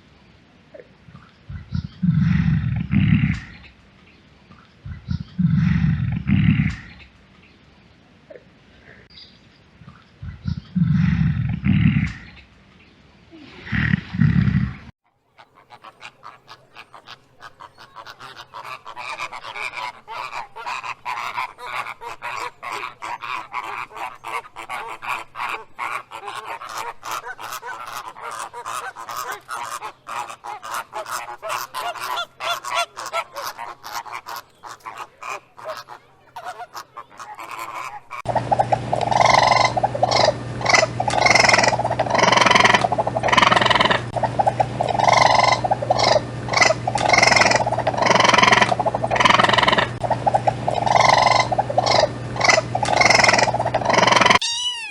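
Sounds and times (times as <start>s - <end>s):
loud low animal calls: 0.7s - 3.7s, 4.9s - 7.0s, 10.2s - 12.4s, 13.3s - 54.9s
loud animal sound: 5.4s - 7.0s, 13.4s - 54.9s
birds honking and chattering: 15.4s - 54.9s
steady low hum: 38.3s - 54.4s.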